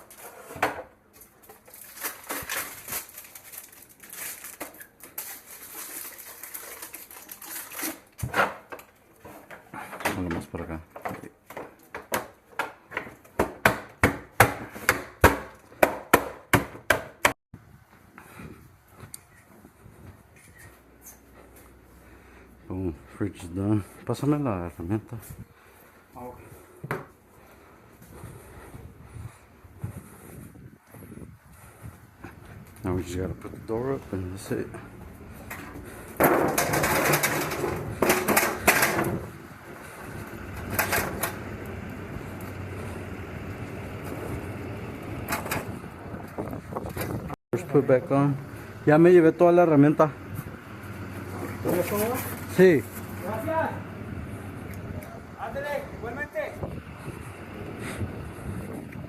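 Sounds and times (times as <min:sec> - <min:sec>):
hardware rattling and clattering: 0:35.3 - 0:41.5.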